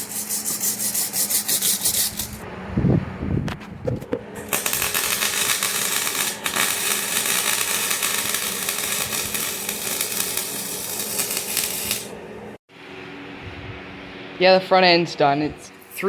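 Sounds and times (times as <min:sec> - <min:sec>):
electric welding arc crackling: 0:04.4 - 0:12.2.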